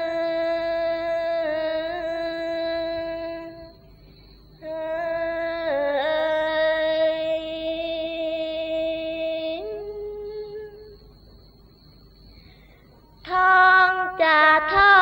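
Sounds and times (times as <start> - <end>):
women chanting long notes: 4.6 - 10.8.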